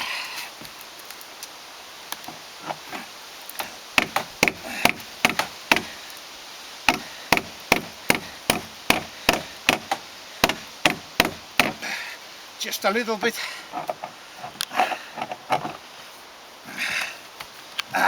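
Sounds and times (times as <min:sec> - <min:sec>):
hammer striking steel: 0:03.6 - 0:05.9, 0:06.9 - 0:11.8.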